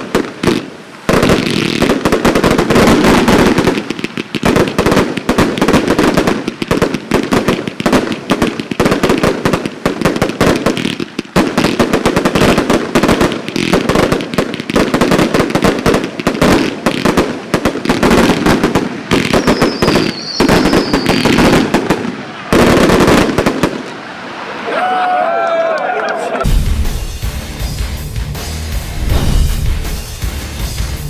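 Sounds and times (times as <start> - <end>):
firework barrage of bangs: 0.0 - 24.6, 26.4 - 27.8, 28.9 - 31.0
thin high whistle: 19.4 - 21.3.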